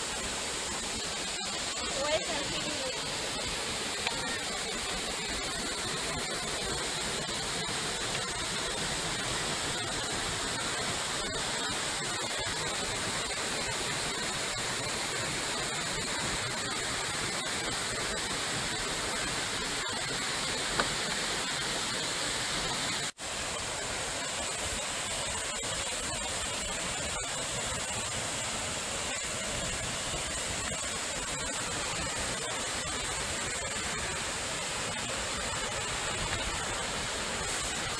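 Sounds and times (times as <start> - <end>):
waterfall roaring: 0.0 - 37.9.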